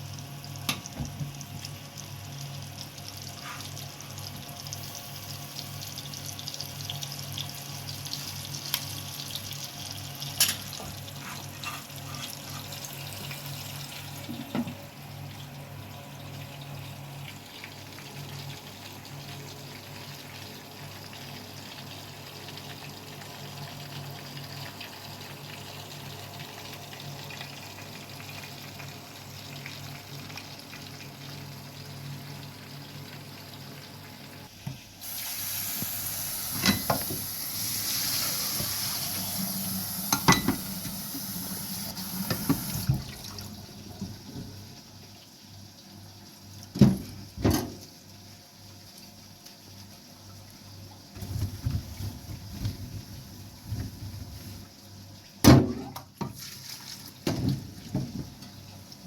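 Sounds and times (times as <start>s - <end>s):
tap water running into sink: 34.6s - 44.7s.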